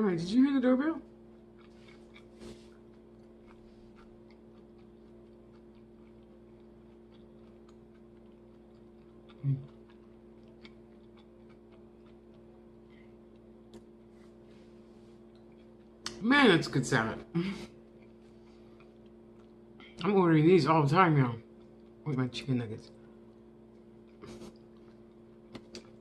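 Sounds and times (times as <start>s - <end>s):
steady low hum: 0.0s - 26.0s
crisp chewing clicks: 2.9s - 14.0s, 23.3s - 26.0s
low throat sound: 9.4s - 9.7s.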